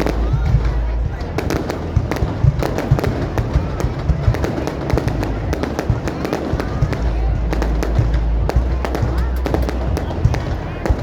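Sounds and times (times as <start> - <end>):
fireworks bangs and crackles: 0.0 - 11.0
low rumble: 0.0 - 11.0.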